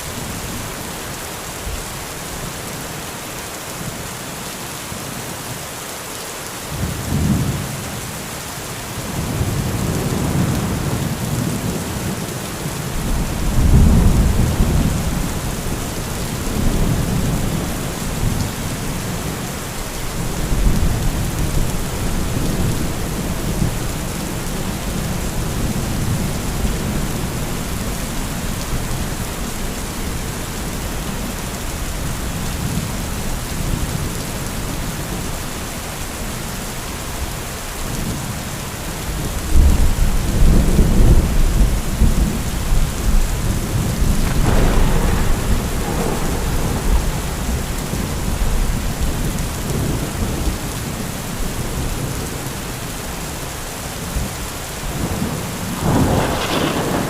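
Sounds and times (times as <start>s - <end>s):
heavy rain: 0.0s - 57.0s
rolling thunder: 12.9s - 19.4s, 39.5s - 50.6s, 55.0s - 57.0s.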